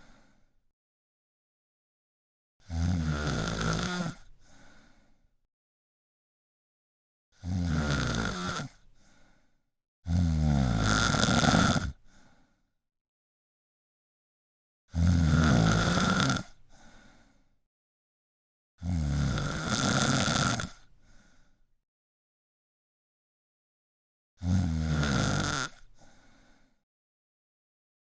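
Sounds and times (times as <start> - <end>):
person snoring: 2.6 - 4.3, 7.4 - 8.8, 10.1 - 12.0, 14.9 - 16.6, 18.8 - 20.9, 24.4 - 26.5.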